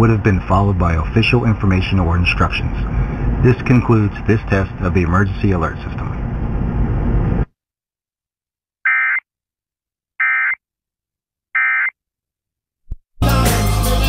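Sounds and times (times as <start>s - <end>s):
noisy background: 0.0s - 7.3s.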